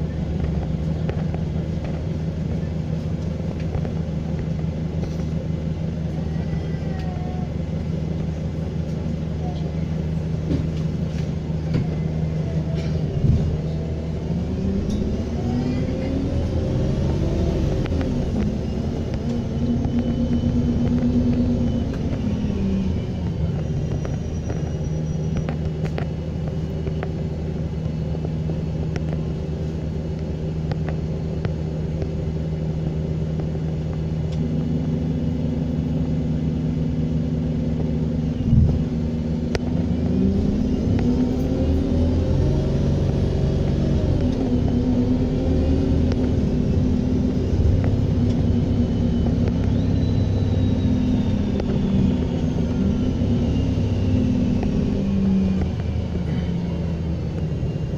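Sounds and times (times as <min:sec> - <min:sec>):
diesel bus engine: 0:00.0 - 0:57.9
faint turbo whistle: 0:18.2 - 0:26.0, 0:48.1 - 0:55.5.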